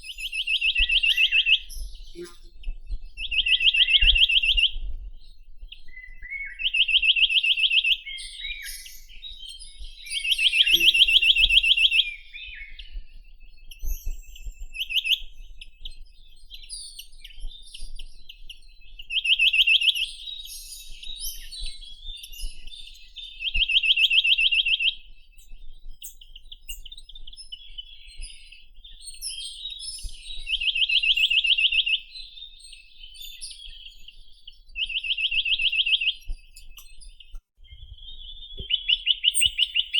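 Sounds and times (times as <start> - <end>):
faint bird chirps: 0.0 - 39.9
bird singing fast trills: 10.2 - 12.8.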